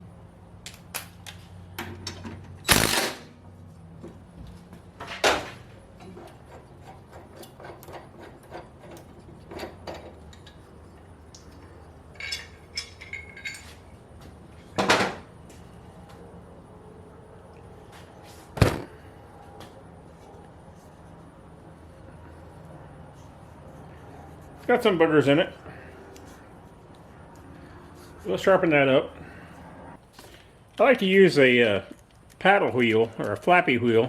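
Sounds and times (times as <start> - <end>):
tools clicking and knocking: 6.0 - 10.7.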